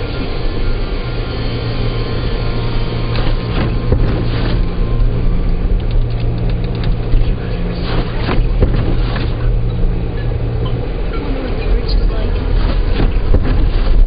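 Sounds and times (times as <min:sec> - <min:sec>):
car engine hum: 0:00.0 - 0:14.0
road noise: 0:00.0 - 0:14.0
knocks and thumps: 0:03.2 - 0:04.7, 0:05.8 - 0:09.5, 0:12.4 - 0:14.0.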